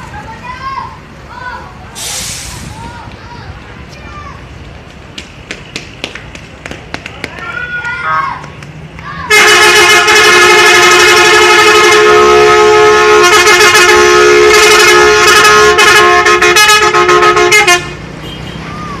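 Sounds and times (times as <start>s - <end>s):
multi-note bus air horn: 9.3s - 18.5s.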